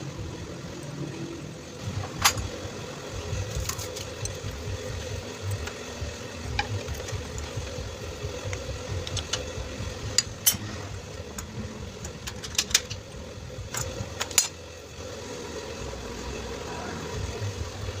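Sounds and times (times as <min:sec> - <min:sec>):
motorcycle engine running: 0:00.0 - 0:18.0.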